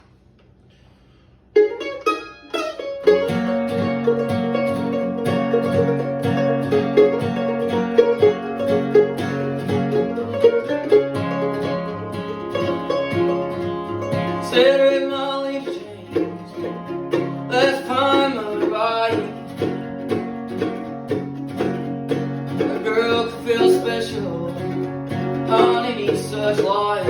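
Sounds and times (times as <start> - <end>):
plucked string instruments strumming: 1.5 - 27.0.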